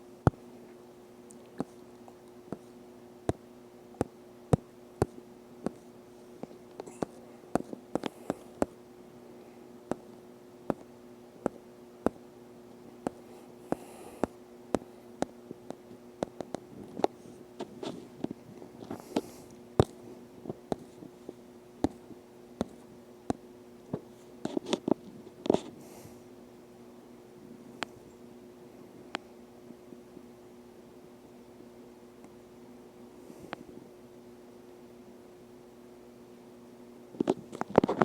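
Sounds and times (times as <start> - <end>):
faint low hum: 0.0 - 38.0.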